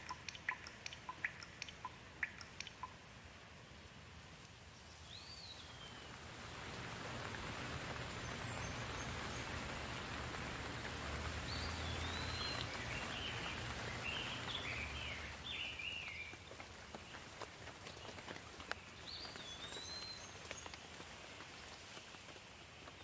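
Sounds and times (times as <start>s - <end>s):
bird chirping high calls: 0.0s - 3.0s, 11.5s - 16.4s
sharp drip clicks: 0.0s - 3.2s
rain falling: 0.0s - 23.0s.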